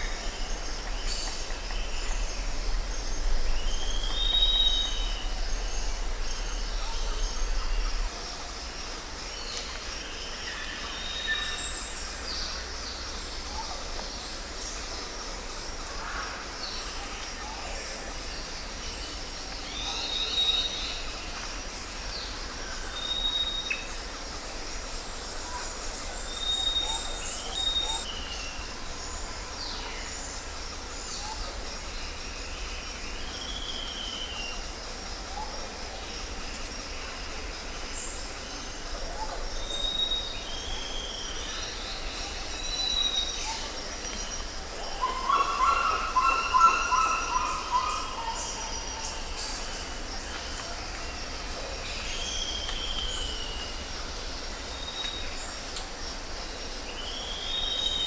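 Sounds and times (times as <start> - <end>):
insect chorus: 0.0 - 58.0
low rumble: 0.4 - 8.4.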